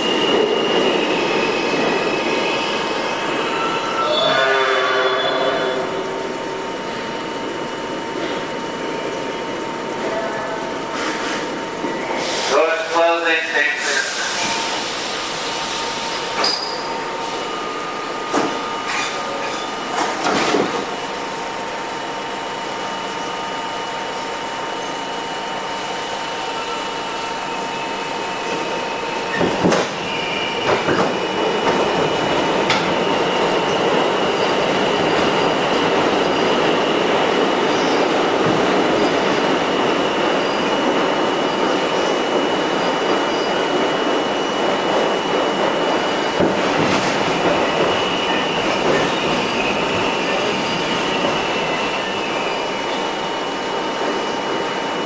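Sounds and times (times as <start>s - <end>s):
subway car rumble: 0.0s - 55.0s.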